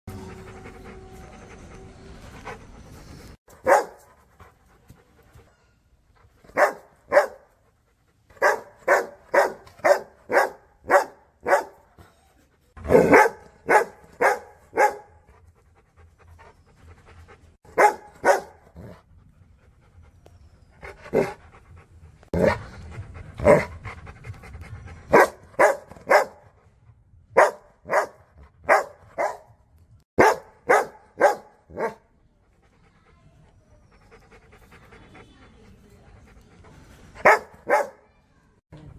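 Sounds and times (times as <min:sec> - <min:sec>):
dogs barking: 0:03.6 - 0:04.1, 0:06.5 - 0:07.5, 0:08.4 - 0:11.8, 0:12.8 - 0:15.2, 0:17.8 - 0:18.6, 0:25.1 - 0:26.4, 0:27.4 - 0:29.5, 0:30.2 - 0:32.0, 0:37.2 - 0:38.1.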